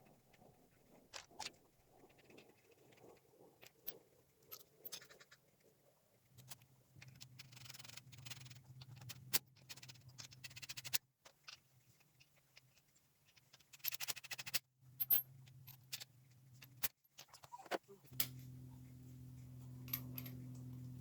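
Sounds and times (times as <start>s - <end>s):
low hum: 18.1s - 21.0s
metal scraping: 18.1s - 21.0s.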